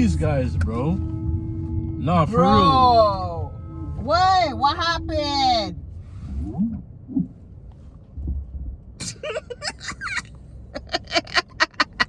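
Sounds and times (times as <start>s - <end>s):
car interior rumble: 0.0s - 12.0s
person laughing: 9.1s - 12.0s.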